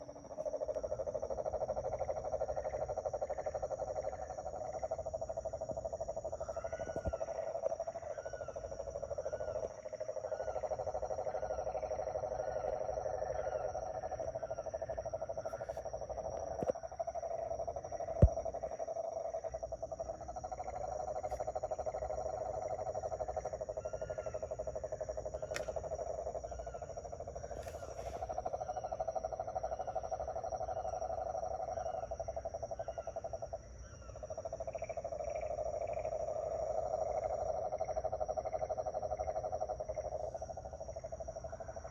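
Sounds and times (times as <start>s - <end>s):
frogs trilling: 0.0s - 41.9s
high insect whine: 0.0s - 41.9s.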